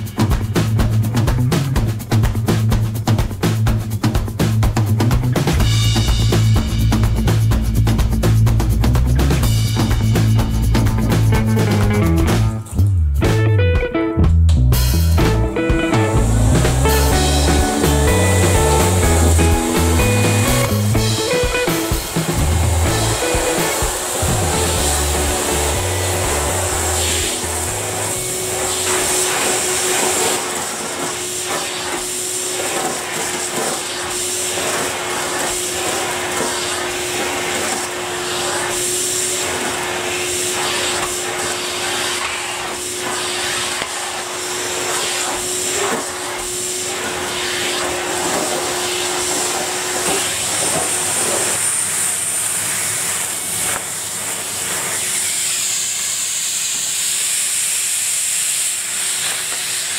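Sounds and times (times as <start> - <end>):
vacuum cleaner running: 9.3 - 12.8, 14.9 - 59.9
leaves crackling into vacuum: 15.4 - 40.5.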